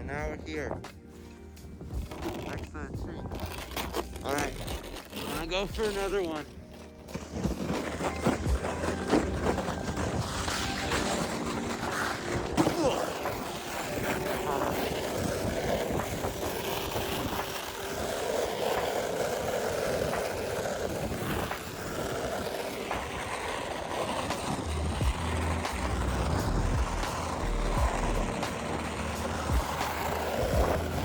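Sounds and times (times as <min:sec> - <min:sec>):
sled scraping on snow: 0:00.0 - 0:31.0
wind buffeting microphone: 0:09.4 - 0:18.3, 0:19.4 - 0:28.8.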